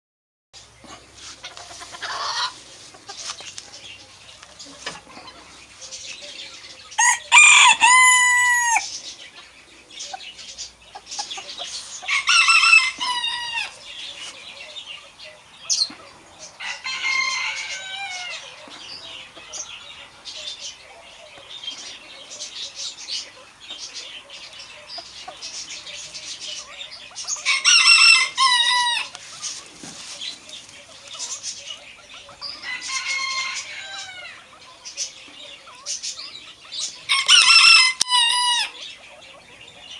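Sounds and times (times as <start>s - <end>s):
chicken clucking: 0.8s - 39.9s
rooster crowing: 7.0s - 8.9s, 12.1s - 13.8s, 16.6s - 18.5s, 27.5s - 29.2s, 32.6s - 34.4s, 37.1s - 38.8s.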